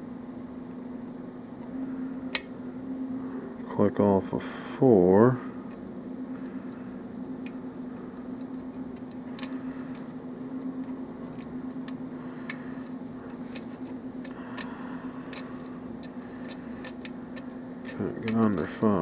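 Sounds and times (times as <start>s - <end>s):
steady low hum: 0.0s - 19.0s
lock pick metallic ticks: 10.8s - 12.6s, 15.3s - 18.8s.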